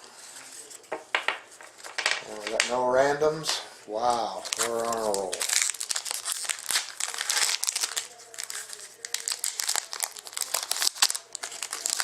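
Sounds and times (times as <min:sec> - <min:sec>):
wrapper crinkling and tearing: 0:04.3 - 0:12.0.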